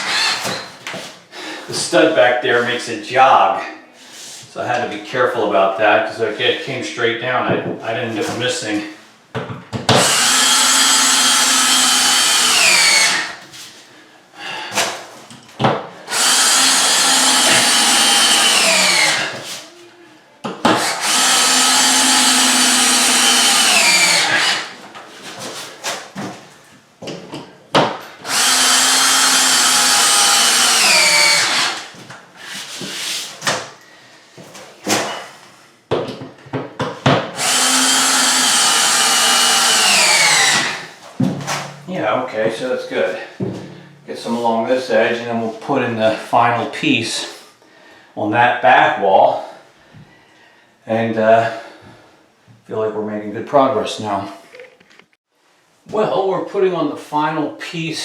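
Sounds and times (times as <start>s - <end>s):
power drill driving screws: 0.0s - 0.7s, 9.9s - 13.3s, 16.1s - 19.4s, 20.7s - 24.7s, 28.2s - 31.9s, 37.4s - 40.9s.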